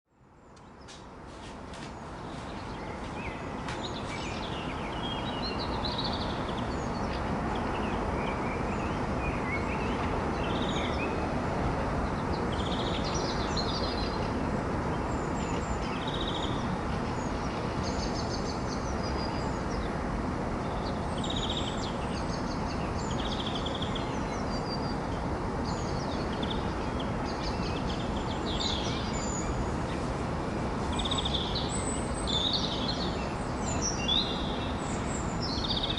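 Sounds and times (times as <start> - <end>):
songbirds chirping and singing: 31.0 - 35.9.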